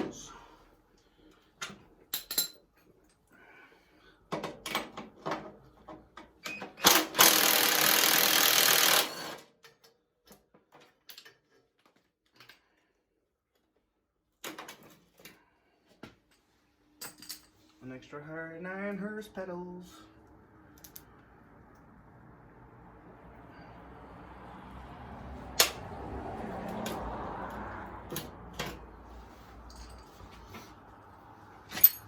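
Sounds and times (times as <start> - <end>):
metal tools clinking: 2.0 - 3.2, 16.3 - 17.8, 29.6 - 30.5, 31.6 - 32.0
power tool running: 7.2 - 9.4.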